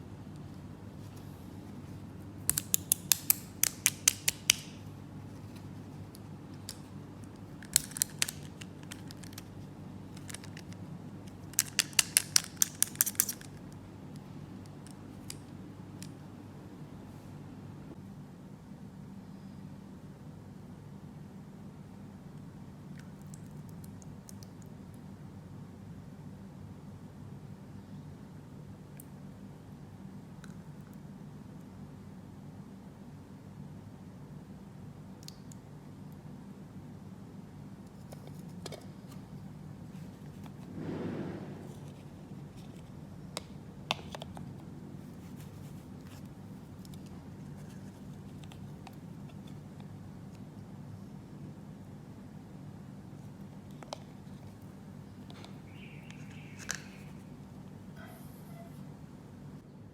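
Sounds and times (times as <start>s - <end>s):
faint low hum with hiss: 0.0s - 59.9s
plastic toy pieces clicking: 2.5s - 4.7s, 7.6s - 9.4s, 11.5s - 13.5s.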